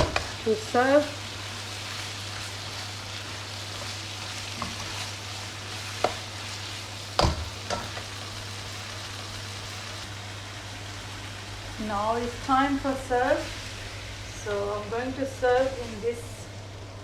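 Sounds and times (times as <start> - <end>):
utensil knocking against pan: 0.0 - 0.4, 7.2 - 8.0
curry sizzling in a pan: 0.0 - 17.0.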